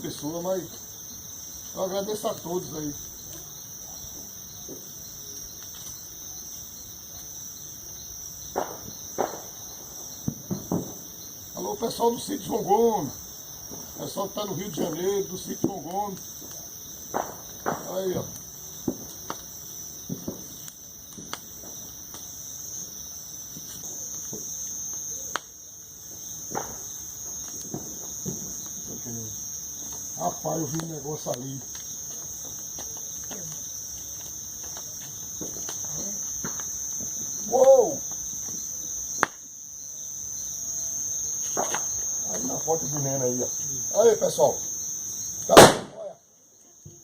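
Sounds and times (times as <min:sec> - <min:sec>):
crickets chirping: 0:00.0 - 0:47.0
short sharp cracks: 0:45.5 - 0:46.1.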